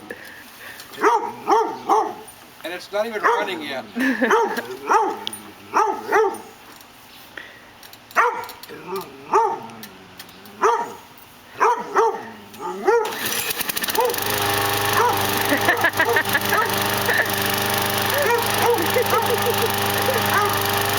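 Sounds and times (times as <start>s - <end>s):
dog barking: 1.0s - 2.3s, 3.2s - 3.6s, 4.2s - 6.6s, 8.2s - 9.7s, 10.6s - 13.1s, 13.9s - 14.3s, 15.0s - 15.2s, 18.2s - 19.5s, 20.1s - 20.6s
lawn mower engine running: 12.5s - 20.9s.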